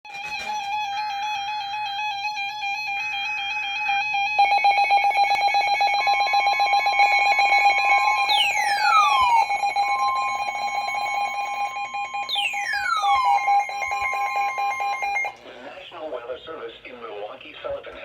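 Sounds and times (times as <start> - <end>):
electronic beeping tone: 4.4 - 15.4
falling electronic sweep: 7.9 - 15.3.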